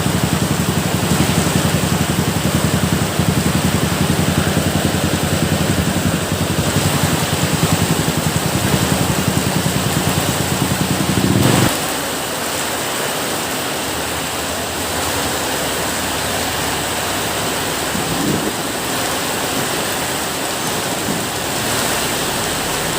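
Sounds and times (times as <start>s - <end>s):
low pulsing hum: 0.0s - 11.8s
heavy rain: 0.0s - 22.9s.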